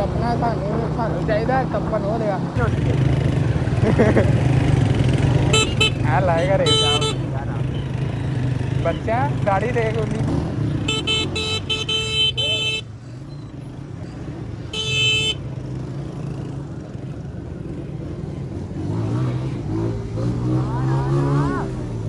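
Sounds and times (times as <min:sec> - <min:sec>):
engine and road hum: 0:00.0 - 0:22.0
vehicle horn short blasts: 0:05.5 - 0:07.2, 0:10.9 - 0:12.8, 0:14.7 - 0:15.4.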